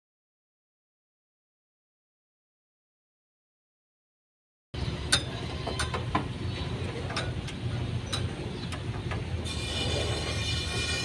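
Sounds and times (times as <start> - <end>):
steady low hum: 4.8 - 11.0.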